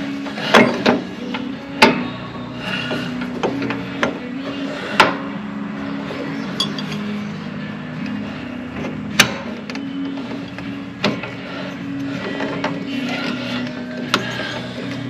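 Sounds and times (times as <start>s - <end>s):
metal parts clinking and knocking: 6.5s - 7.1s.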